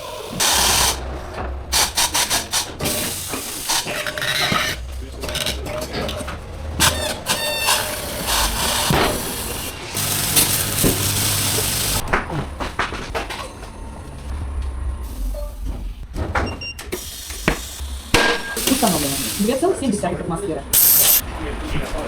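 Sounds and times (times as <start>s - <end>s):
hiss: 0.0s - 1.1s, 1.8s - 4.5s, 7.3s - 12.0s, 17.0s - 19.7s, 20.8s - 21.2s
metal tools rubbing on wheel: 20.8s - 21.2s.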